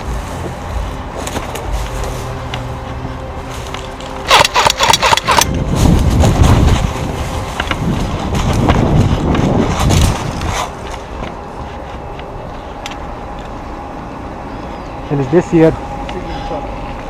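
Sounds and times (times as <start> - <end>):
low rumble: 0.0 - 15.2
airsoft gun rapid burst: 4.3 - 5.5.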